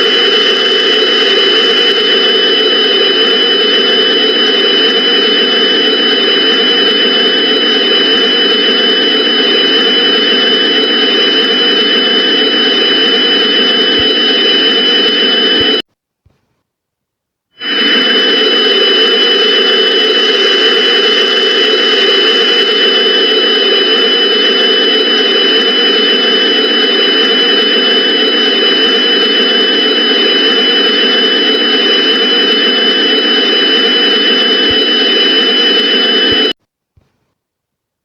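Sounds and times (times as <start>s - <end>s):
loud droning noise: 0.0s - 15.8s, 17.6s - 36.6s
high-pitched steady tones: 17.6s - 36.6s.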